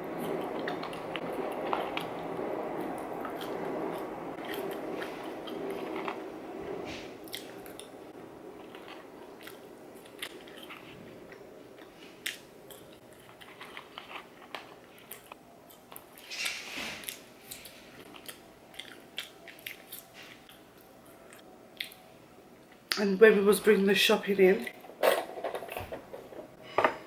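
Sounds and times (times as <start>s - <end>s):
person biting and chewing food: 2.8s - 6.2s, 8.6s - 22.0s.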